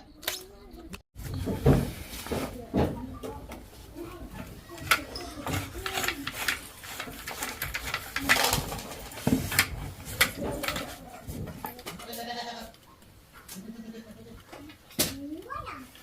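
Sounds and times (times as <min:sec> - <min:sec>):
knocks and clatter: 0:01.3 - 0:12.1
animal bleating: 0:12.0 - 0:12.8, 0:13.5 - 0:14.4.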